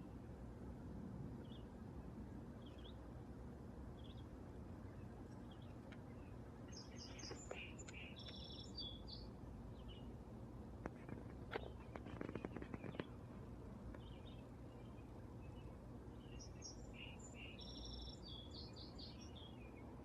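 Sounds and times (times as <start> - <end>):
low background rumble: 0.0 - 20.0
faint bird chirps: 4.0 - 10.1, 11.0 - 13.2, 13.9 - 20.0.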